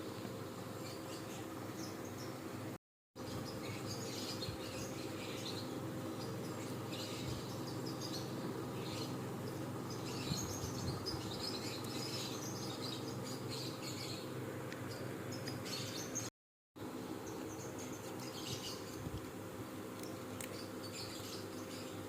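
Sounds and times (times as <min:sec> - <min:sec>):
small birds chirping: 0:00.0 - 0:22.0
steady low hum: 0:00.0 - 0:22.0.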